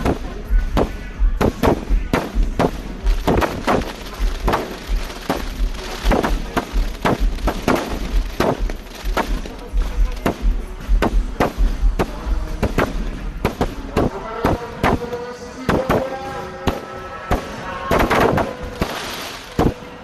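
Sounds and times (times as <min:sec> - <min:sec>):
fireworks low booms: 0:00.0 - 0:15.0
fireworks sharp bangs: 0:00.0 - 0:20.0.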